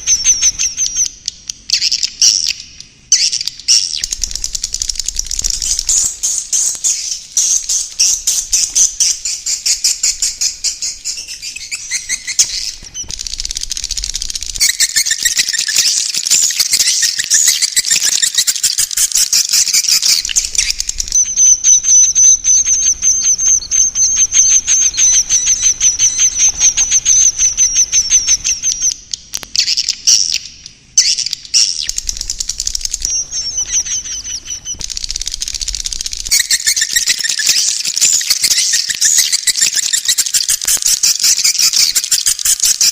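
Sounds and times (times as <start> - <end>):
swiftlets chattering and clicking: 34.8 - 42.8.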